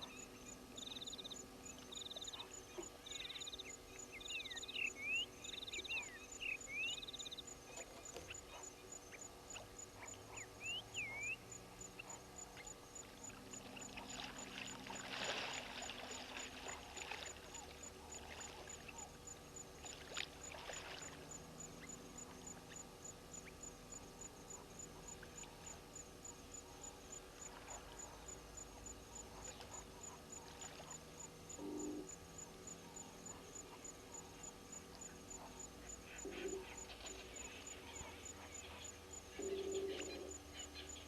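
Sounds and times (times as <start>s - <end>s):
bird chirp: 0.0s - 12.7s
water sloshing and splashing: 13.3s - 19.1s, 19.8s - 21.4s.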